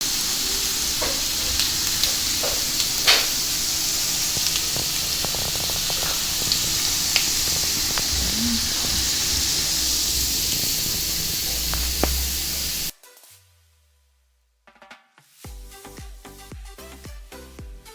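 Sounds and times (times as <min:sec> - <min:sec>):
food sizzling in a pan: 0:00.0 - 0:13.4
oil spitting pops: 0:01.0 - 0:03.5, 0:04.3 - 0:12.8.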